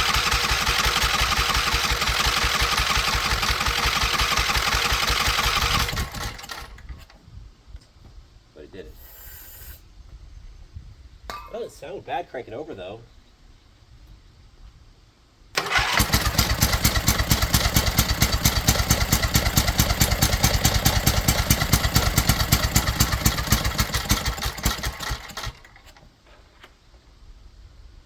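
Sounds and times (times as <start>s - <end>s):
small engine running roughly: 0.0s - 6.9s, 15.6s - 26.0s.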